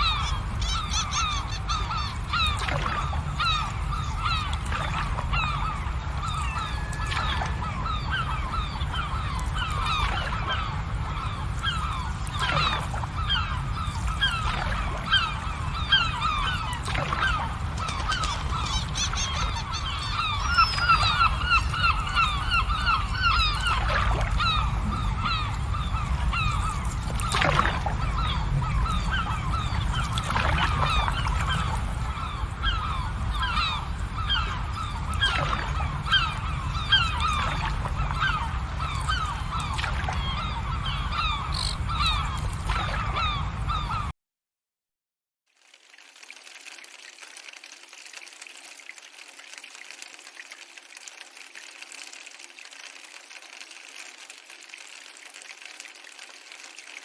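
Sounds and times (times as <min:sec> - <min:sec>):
flock of birds calling: 0:00.0 - 0:44.1.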